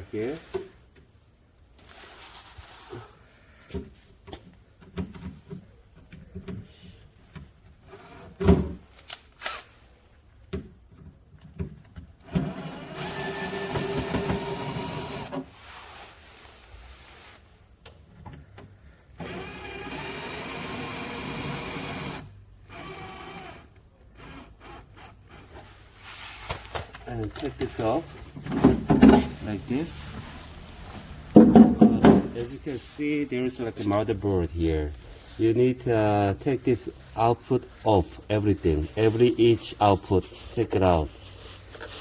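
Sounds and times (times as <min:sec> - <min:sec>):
power screwdriver running: 0:12.4 - 0:15.3, 0:19.2 - 0:23.6.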